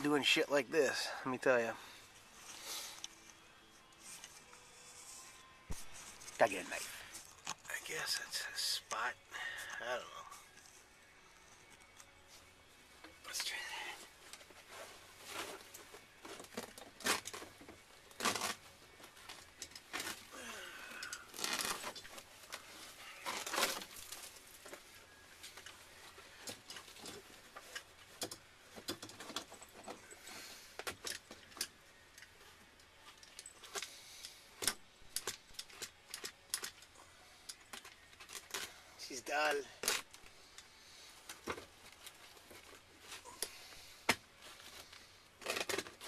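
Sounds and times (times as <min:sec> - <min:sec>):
knife scraping and tearing: 0:45.4 - 0:46.0.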